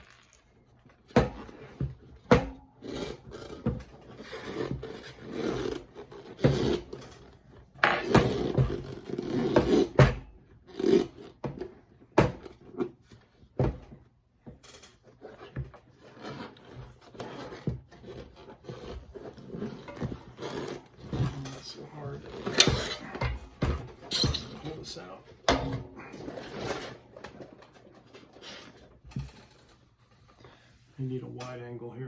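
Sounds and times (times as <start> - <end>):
rubber tire rubbing and scraping: 2.8 - 10.0, 14.9 - 25.2, 26.0 - 29.1.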